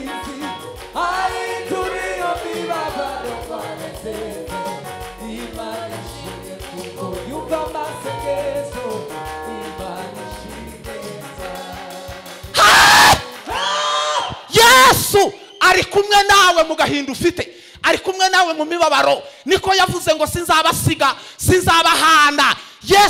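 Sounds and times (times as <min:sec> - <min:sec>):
person singing: 0:00.0 - 0:13.8
gospel band accompaniment: 0:00.0 - 0:17.7.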